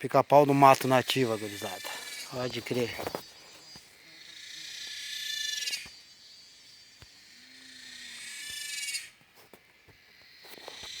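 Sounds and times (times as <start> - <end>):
shrill insect buzzing: 0.6 - 9.2.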